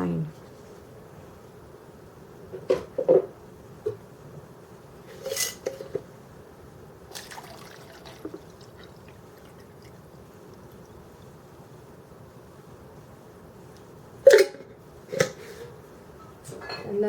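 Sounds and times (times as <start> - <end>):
water pouring into a reservoir: 7.1 - 11.1.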